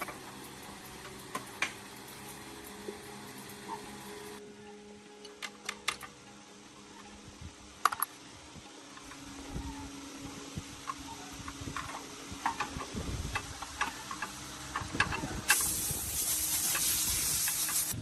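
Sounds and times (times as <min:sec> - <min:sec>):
loud steady hiss: 0:09.0 - 0:18.0.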